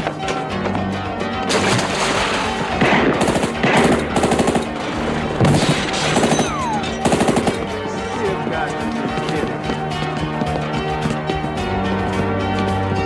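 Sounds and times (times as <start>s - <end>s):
automatic gunfire bursts: 2.7s - 7.8s.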